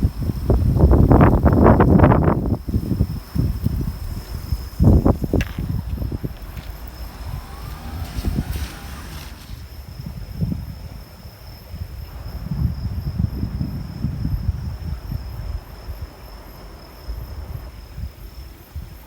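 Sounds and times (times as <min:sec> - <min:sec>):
insects trilling: 0:00.0 - 0:10.8
low rumble on microphone: 0:00.0 - 0:11.3.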